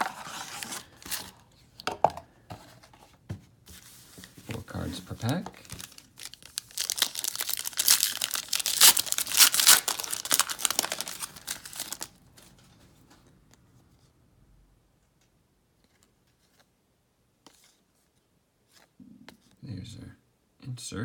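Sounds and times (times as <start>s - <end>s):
card pack wrapper tearing: 5.2s - 12.2s.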